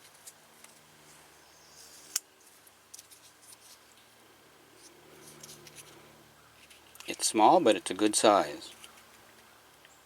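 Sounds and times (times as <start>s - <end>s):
knife handling ticks and rubbing: 0.0s - 4.0s, 4.8s - 7.2s, 8.5s - 9.9s.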